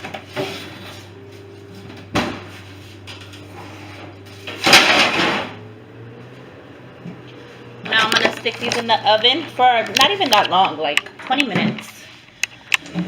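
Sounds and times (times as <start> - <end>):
clattering scrape: 0.0 - 1.2.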